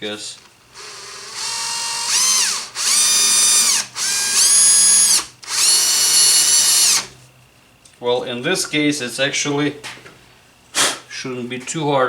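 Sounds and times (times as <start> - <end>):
cordless drill motor whine: 0.7 - 7.1.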